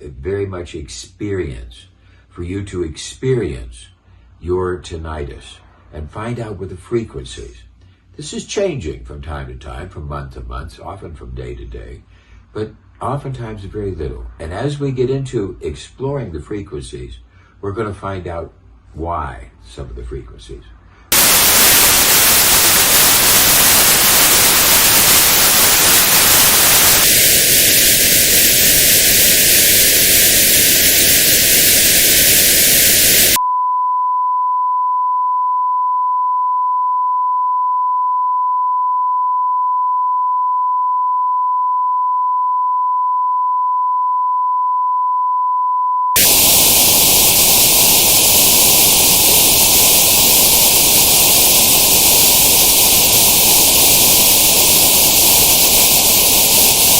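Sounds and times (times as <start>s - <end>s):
white noise hiss: 19.8s - 33.4s, 46.2s - 56.9s
notched white noise: 21.1s - 33.4s, 46.2s - 56.9s
steady pure tone: 21.1s - 45.4s, 46.0s - 56.9s.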